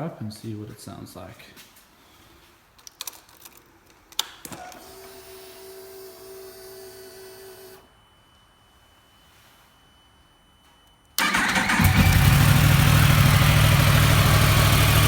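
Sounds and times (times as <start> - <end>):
electric fuel pump whir: 4.5 - 7.9.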